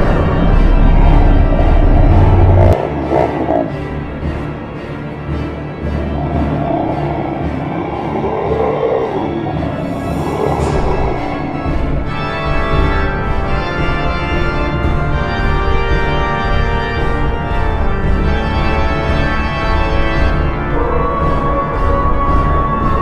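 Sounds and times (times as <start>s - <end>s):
eerie organ chords: 0.0s - 23.0s.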